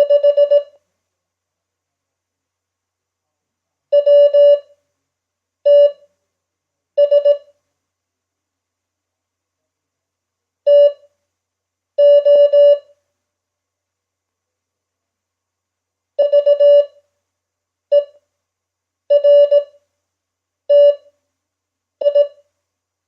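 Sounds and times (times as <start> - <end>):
morse code beeps: 0.0 - 0.7, 4.0 - 4.6, 5.7 - 6.0, 7.0 - 7.5, 12.0 - 12.8, 16.2 - 16.9, 19.1 - 19.7, 20.7 - 21.0, 22.0 - 22.4.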